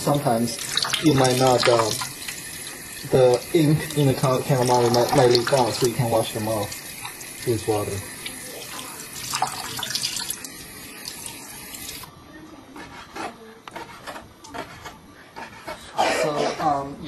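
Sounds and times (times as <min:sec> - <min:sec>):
kitchen tap running: 0:00.0 - 0:12.1.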